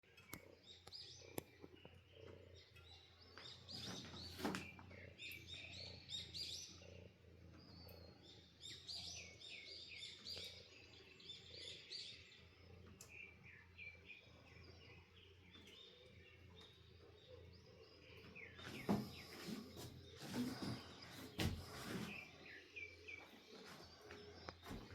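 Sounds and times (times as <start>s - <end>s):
small birds chirping: 0.0s - 24.9s
soft knocks or rustles: 18.6s - 22.3s.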